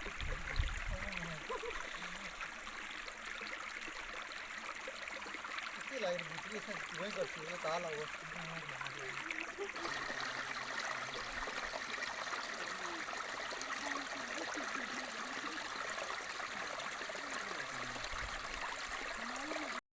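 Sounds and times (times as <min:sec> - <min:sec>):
rushing flowing water: 0:00.0 - 0:19.8
faint voices: 0:05.8 - 0:19.8.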